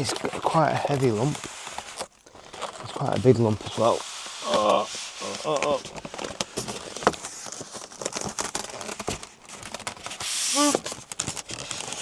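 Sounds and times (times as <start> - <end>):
wrapping crinkling and rustling: 0.0 - 12.0
hiss of sliding material: 3.7 - 5.6.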